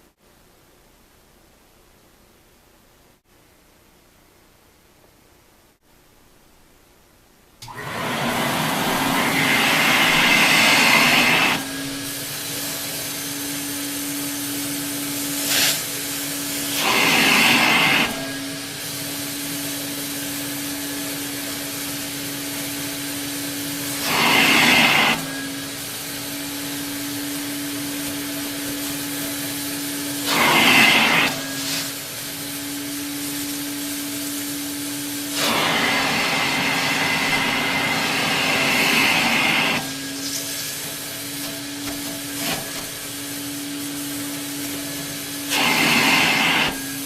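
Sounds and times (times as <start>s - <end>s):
air rushing through vacuum: 7.6s - 47.0s
vacuum motor hum: 7.6s - 47.0s.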